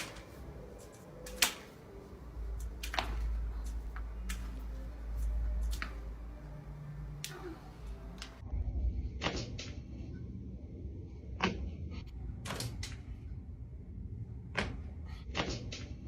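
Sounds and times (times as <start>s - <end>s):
back cracking pops: 1.3s - 1.8s.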